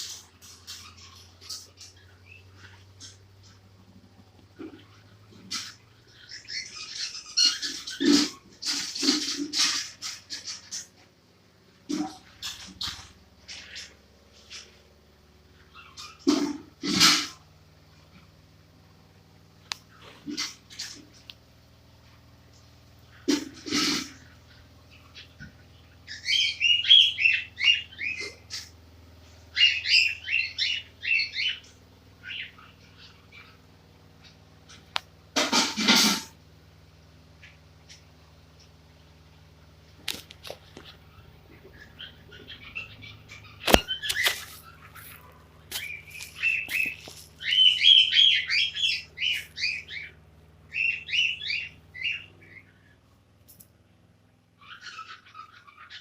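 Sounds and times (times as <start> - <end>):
cockatiel chirping: 41.8 - 52.9, 54.6 - 56.0.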